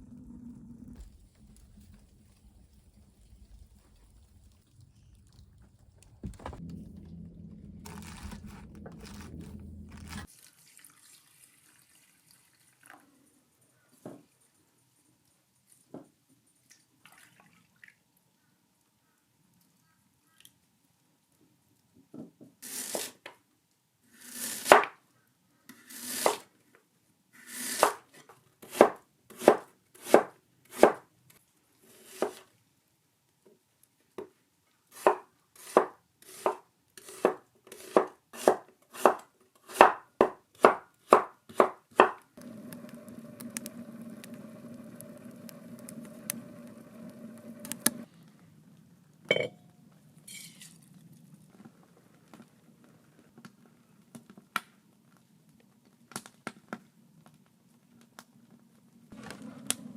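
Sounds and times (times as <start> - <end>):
low hum: 0.0 - 10.3, 42.4 - 48.0
knife chopping on cutting board: 35.0 - 42.2.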